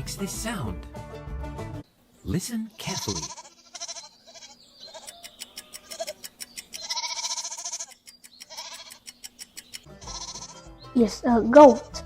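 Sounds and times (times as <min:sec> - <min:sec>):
goat bleating: 0:02.7 - 0:09.2, 0:09.9 - 0:10.8.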